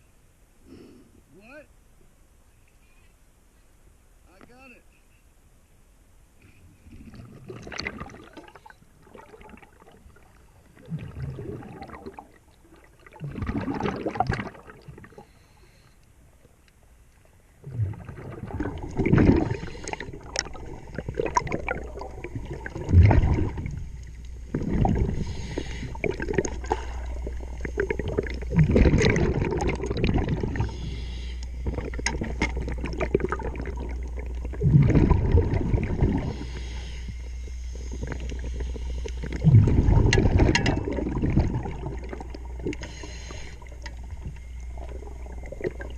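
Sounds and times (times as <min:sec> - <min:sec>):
bubbles gurgling underwater: 0:06.9 - 0:15.2, 0:17.6 - 0:36.9, 0:37.7 - 0:43.0, 0:43.6 - 0:45.9
steady low hum: 0:08.5 - 0:45.9.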